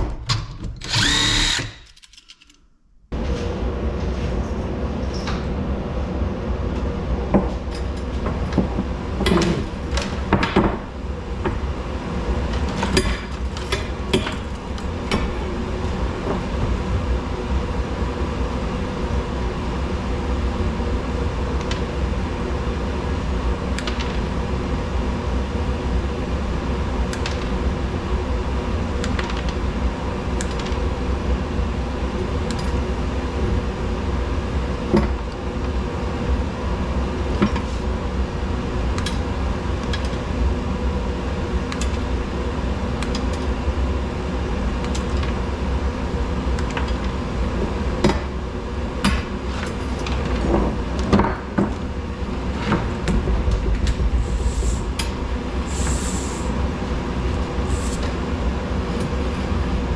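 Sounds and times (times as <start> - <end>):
mechanical hum with low rumble: 0.0 - 59.9
metal clicks and clanks: 1.7 - 2.7.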